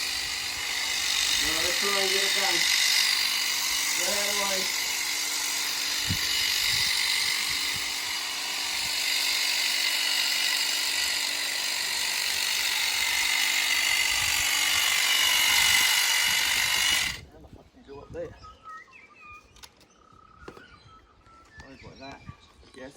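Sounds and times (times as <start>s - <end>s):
hedge trimmer buzzing: 0.0s - 17.2s.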